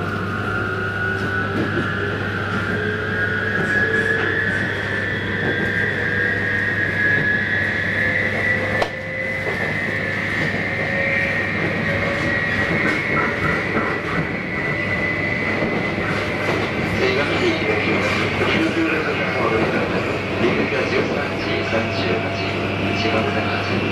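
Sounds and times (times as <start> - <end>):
train rumbling: 0.0 - 23.9.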